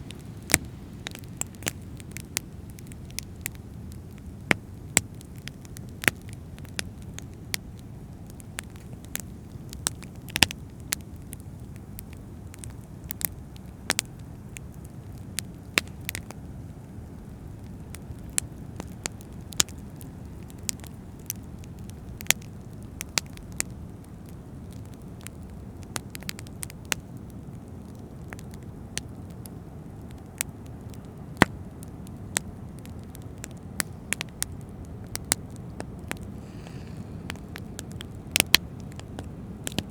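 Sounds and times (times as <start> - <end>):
fire crackling and popping: 0.0 - 39.9
ocean waves rumbling: 36.2 - 38.9.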